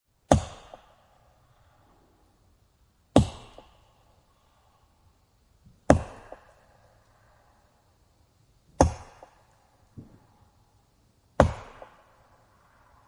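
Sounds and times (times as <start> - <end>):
axe chopping wood: 0.3 - 1.0, 3.2 - 3.8, 5.8 - 6.6, 8.8 - 10.2, 11.4 - 12.1.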